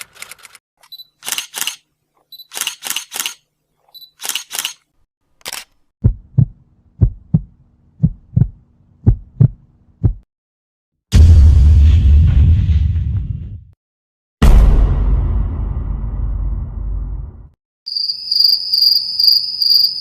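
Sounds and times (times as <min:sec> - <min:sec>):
camera shutter clicks: 0:00.2 - 0:01.8, 0:02.4 - 0:03.4, 0:04.1 - 0:04.8, 0:05.4 - 0:05.8
camera focus beep: 0:02.3 - 0:04.7
heartbeat thumps: 0:06.0 - 0:10.3.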